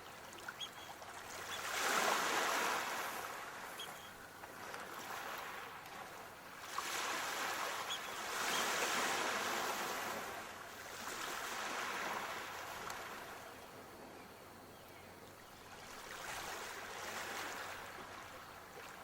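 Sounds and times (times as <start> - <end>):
ocean waves washing in: 1.2 - 13.4.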